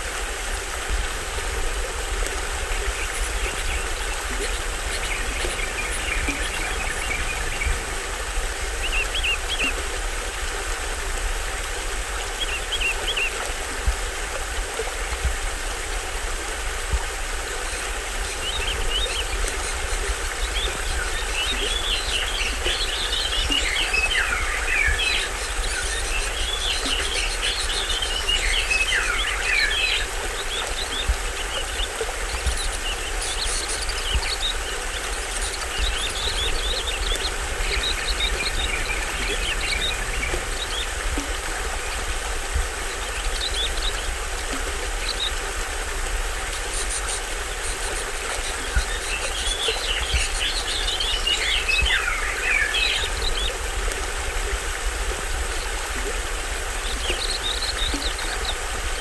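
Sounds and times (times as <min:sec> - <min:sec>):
small waterfall splashing: 0:00.0 - 0:59.0
birds chirping: 0:02.2 - 0:10.3, 0:17.6 - 0:59.0.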